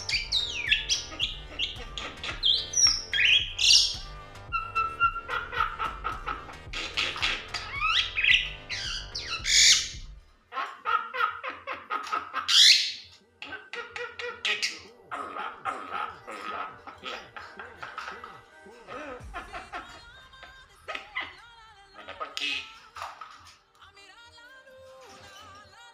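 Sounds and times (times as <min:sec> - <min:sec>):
bird squawks chirps and whistles: 0:00.0 - 0:05.8, 0:06.6 - 0:10.0, 0:12.5 - 0:14.9.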